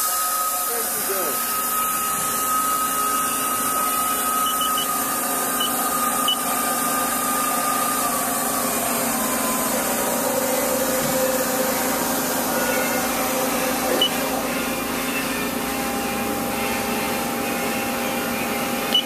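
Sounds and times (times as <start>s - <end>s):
lathe motor whine: 0.0s - 19.0s.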